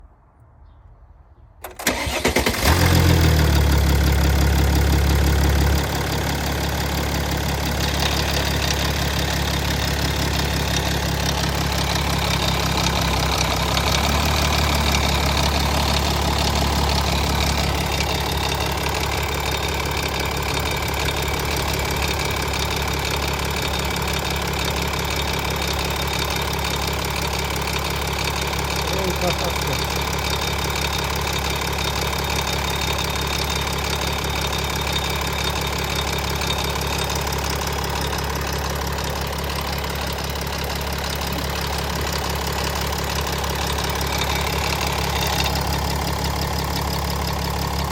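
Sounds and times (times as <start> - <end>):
diesel engine starting and idling: 1.6 - 47.9.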